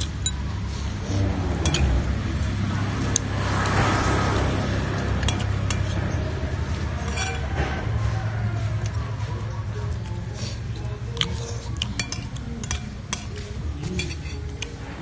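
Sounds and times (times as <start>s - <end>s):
spoons clinking against dishes: 1.6s - 2.0s, 5.2s - 5.9s, 7.0s - 7.5s, 11.2s - 14.7s.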